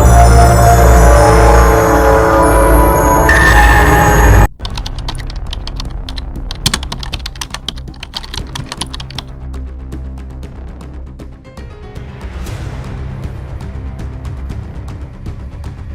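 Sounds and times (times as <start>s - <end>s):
loud music: 0.0s - 4.5s
quiet background music: 2.4s - 10.5s
keyboard typing clicks: 4.5s - 9.3s.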